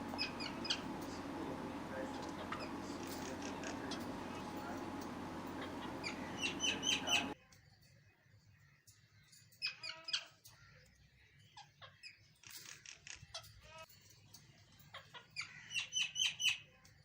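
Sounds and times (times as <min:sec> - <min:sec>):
birds chirping: 0:00.0 - 0:07.4
harsh bird call: 0:00.0 - 0:07.4
steady hiss: 0:00.0 - 0:07.4.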